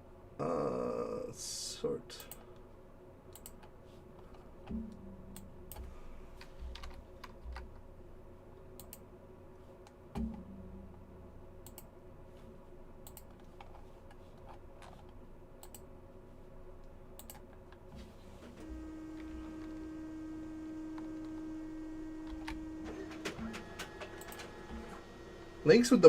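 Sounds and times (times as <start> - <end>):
steady low hum: 0.0 - 26.0
keyboard and mouse clicks: 3.3 - 7.8, 8.8 - 9.0, 11.6 - 11.9, 13.0 - 15.9, 17.2 - 17.8, 22.2 - 24.6.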